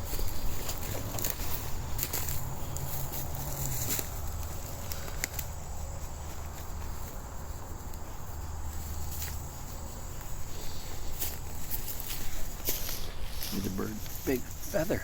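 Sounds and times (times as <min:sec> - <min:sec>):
footsteps through dry leaves: 0:00.0 - 0:15.0
insect chorus: 0:00.0 - 0:15.0
twigs snapping: 0:00.7 - 0:05.6.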